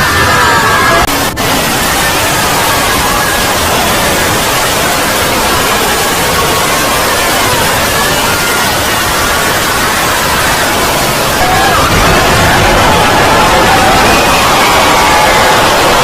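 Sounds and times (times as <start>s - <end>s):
loud static hiss: 0.0s - 16.0s.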